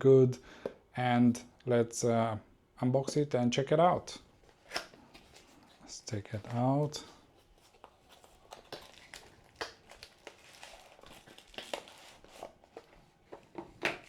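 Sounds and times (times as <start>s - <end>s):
packaging rustling and crinkling: 4.4s - 14.0s.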